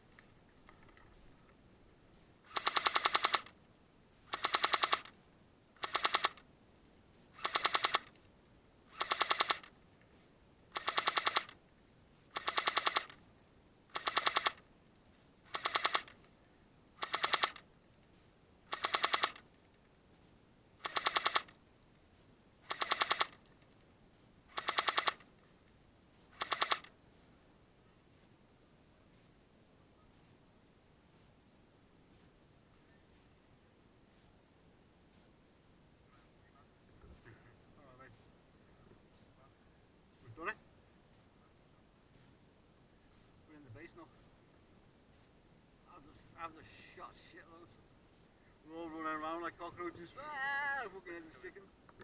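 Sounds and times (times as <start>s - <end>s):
airsoft machine gun bursts: 2.4s - 3.6s, 4.3s - 5.2s, 5.8s - 6.4s, 7.3s - 8.2s, 8.9s - 9.7s, 10.7s - 11.6s, 12.3s - 13.3s, 13.9s - 14.6s, 15.4s - 16.3s, 17.0s - 17.6s, 18.7s - 19.5s, 20.8s - 21.6s, 22.6s - 23.5s, 24.5s - 25.3s, 26.3s - 26.9s.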